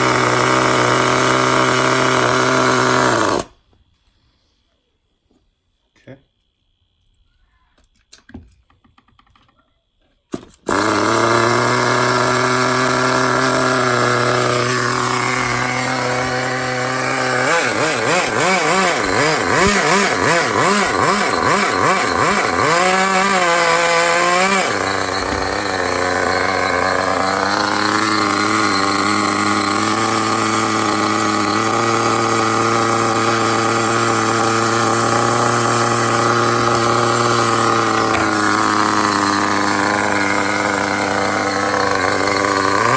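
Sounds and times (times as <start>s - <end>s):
small model engine running and revving: 0.0s - 3.5s, 10.6s - 42.9s.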